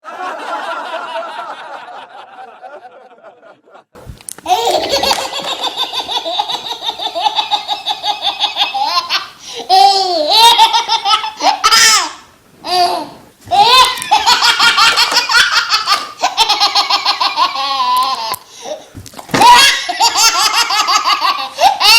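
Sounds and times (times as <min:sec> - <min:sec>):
people laughing: 0:00.0 - 0:09.0
loud squealing laughs: 0:19.4 - 0:21.9.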